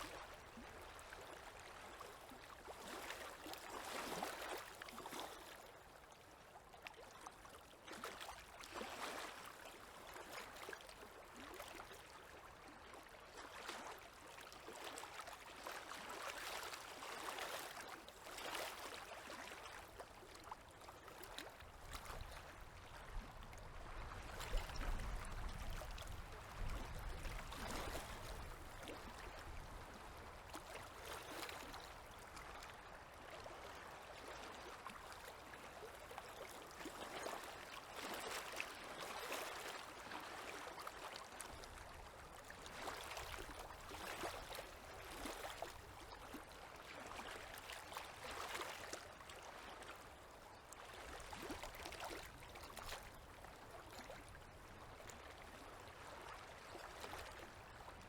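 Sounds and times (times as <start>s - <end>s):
waves lapping at shore: 0.0s - 58.0s.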